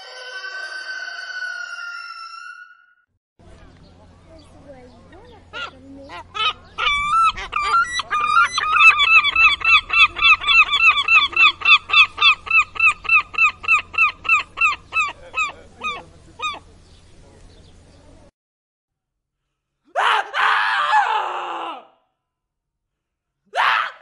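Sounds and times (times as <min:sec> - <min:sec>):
seagull yelping calls: 0:05.5 - 0:16.6.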